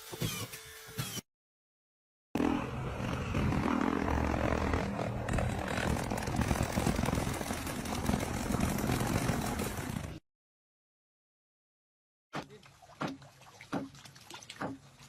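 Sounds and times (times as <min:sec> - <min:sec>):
engine humming: 0:02.4 - 0:10.2.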